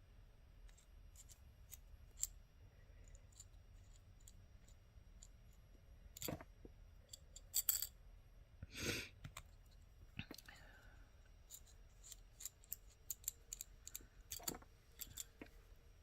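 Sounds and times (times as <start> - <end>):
hand tools clicking and scraping: 11.5 - 15.6.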